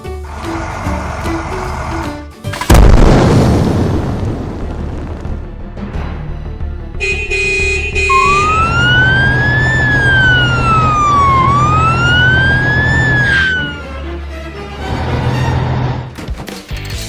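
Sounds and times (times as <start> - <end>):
short horn blasts: 7.0 - 8.6
emergency vehicle siren wailing: 8.1 - 14.2.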